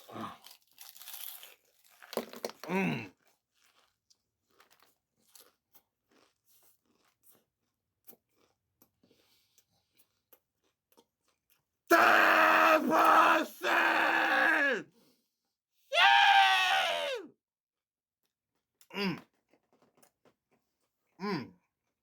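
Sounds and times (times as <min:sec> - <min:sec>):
crunching chips while chewing: 0:00.0 - 0:11.6, 0:18.8 - 0:20.6.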